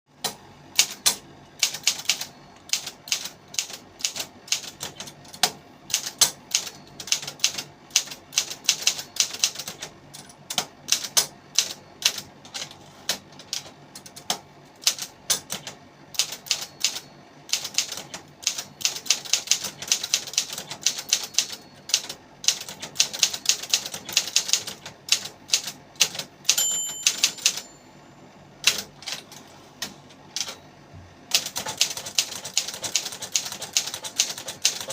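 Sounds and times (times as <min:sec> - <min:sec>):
short ringing tone: 0:26.5 - 0:28.4.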